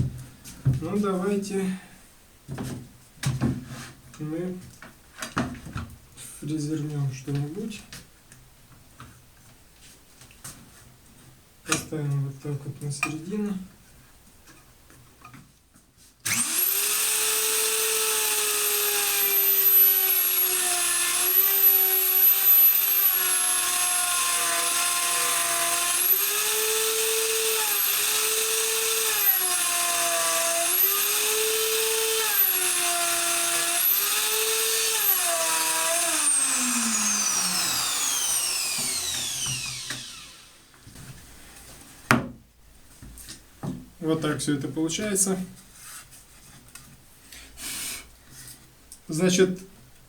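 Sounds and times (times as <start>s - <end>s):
electric router whining: 16.3s - 40.8s.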